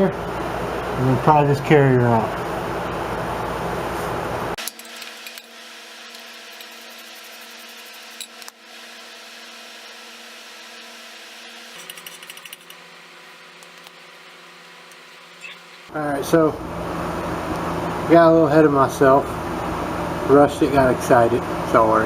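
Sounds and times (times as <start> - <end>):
rapid clicks: 11.7 - 12.8
hand tools clinking on metal: 11.8 - 12.8.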